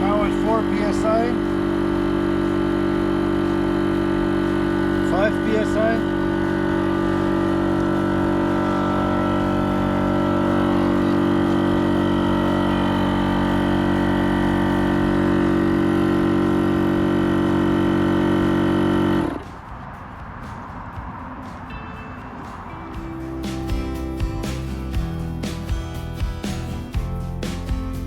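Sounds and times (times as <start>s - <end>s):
electric pump motor hum: 0.0s - 19.5s.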